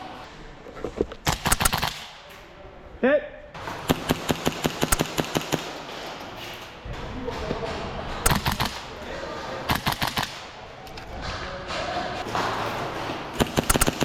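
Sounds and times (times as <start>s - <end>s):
airsoft guns firing in bursts: 1.2s - 2.3s, 3.6s - 7.1s, 7.9s - 10.7s, 12.2s - 14.0s.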